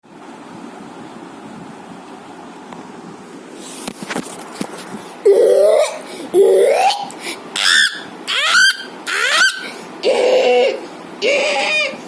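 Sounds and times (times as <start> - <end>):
person's squealing cry: 5.2 - 12.0.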